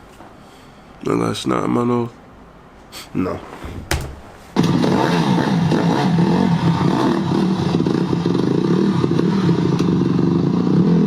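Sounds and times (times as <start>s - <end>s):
dirt bike engine revving: 4.6s - 11.0s.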